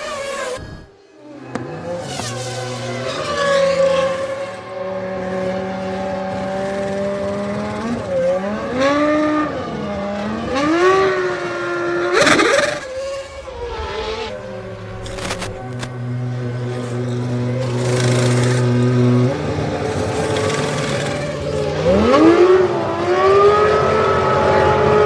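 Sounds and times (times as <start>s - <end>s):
race car engines at high revs: 1.5s - 25.0s
loud rushing burst: 12.2s - 18.7s.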